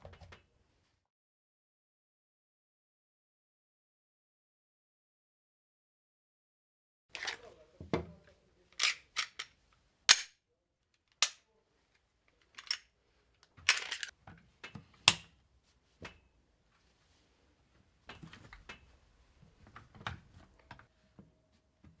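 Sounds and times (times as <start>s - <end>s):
rifle parts clicking: 8.8s - 9.4s, 12.6s - 12.8s, 13.7s - 14.1s
rattling clicks: 13.7s - 14.1s.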